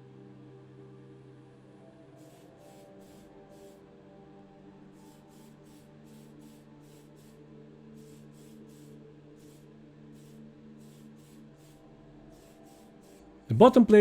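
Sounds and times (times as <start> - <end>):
aerosol can spraying: 2.2 - 3.9, 4.9 - 13.4.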